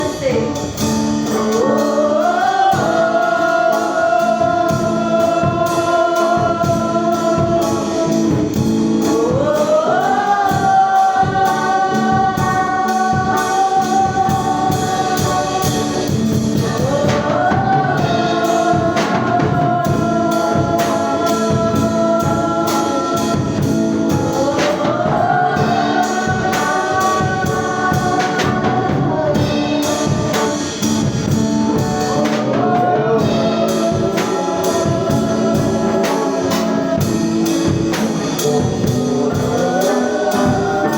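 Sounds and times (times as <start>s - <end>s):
band with drum kit: 0.0s - 40.9s
gospel voices singing: 0.0s - 40.9s.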